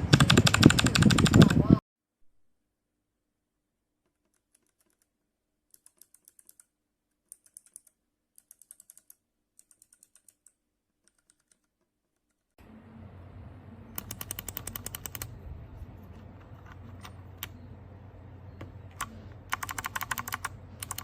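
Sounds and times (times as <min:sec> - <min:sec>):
faint clicky keyboard typing: 0:04.1 - 0:12.6, 0:14.0 - 0:15.3, 0:18.6 - 0:21.0.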